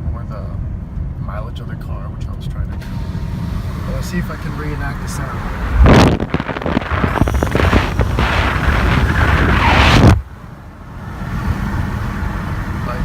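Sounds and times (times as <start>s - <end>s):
car engine accelerating hard: 2.8s - 13.0s
turbo squeal: 4.8s - 10.3s.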